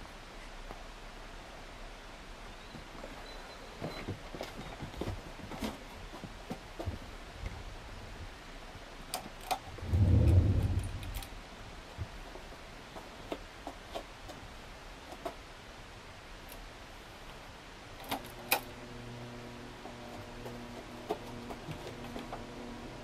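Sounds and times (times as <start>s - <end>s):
ceiling fan running: 8.7s - 12.8s, 15.8s - 23.0s
fan motor electric buzz: 9.6s - 11.4s, 18.0s - 23.0s
low rumble: 9.7s - 11.4s.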